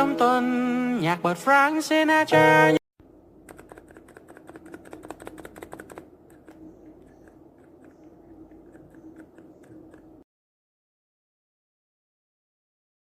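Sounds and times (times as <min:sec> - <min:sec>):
typing on mechanical keyboard: 0:03.5 - 0:10.2.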